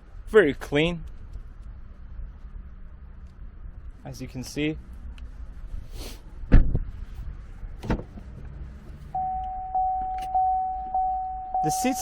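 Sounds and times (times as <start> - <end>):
car warning chime: 9.2 - 12.0.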